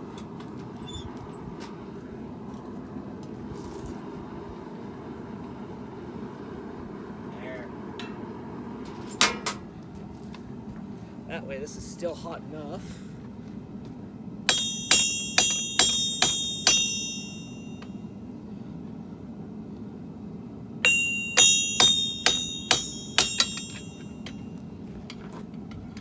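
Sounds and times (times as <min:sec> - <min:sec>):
steady low hum: 0:00.0 - 0:26.0
hammer striking steel on anvil: 0:14.5 - 0:18.0, 0:20.8 - 0:24.6.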